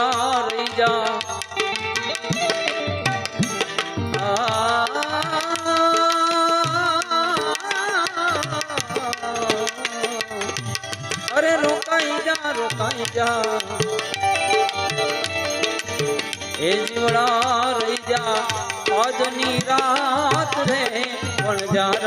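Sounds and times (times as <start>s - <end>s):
tabla playing a rhythm: 0.0s - 22.0s
wavering melody line: 13.3s - 21.3s.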